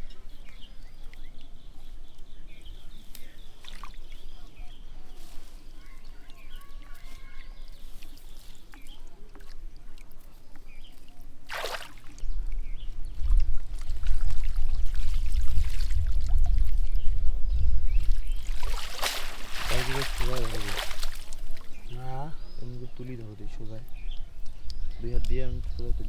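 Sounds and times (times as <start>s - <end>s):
swishing splash: 11.5s - 12.2s, 18.2s - 21.8s
low rumble on microphone: 12.1s - 22.9s, 23.6s - 26.0s
water trickling and pouring: 18.1s - 21.9s.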